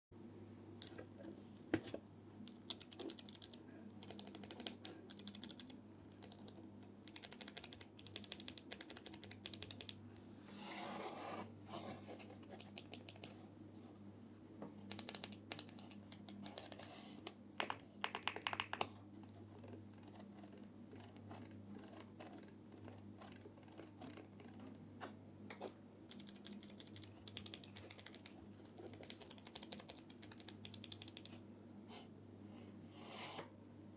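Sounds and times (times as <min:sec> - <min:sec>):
faint steady hum: 0:00.1 - 0:33.9
mechanical keyboard clicks: 0:02.5 - 0:10.0, 0:26.1 - 0:31.4.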